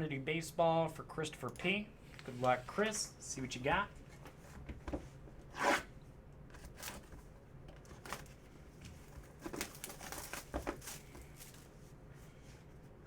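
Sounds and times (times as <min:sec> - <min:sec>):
cards rustling and scraping: 0:07.8 - 0:11.8.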